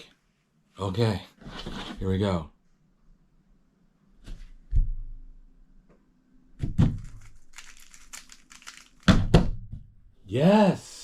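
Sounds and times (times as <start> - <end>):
puzzle cube plastic clicks: 7.0 - 9.1.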